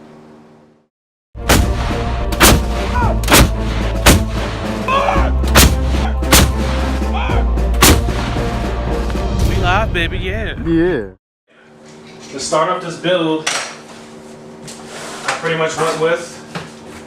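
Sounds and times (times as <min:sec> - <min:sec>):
music with deep bass and drums: 0:01.4 - 0:11.0.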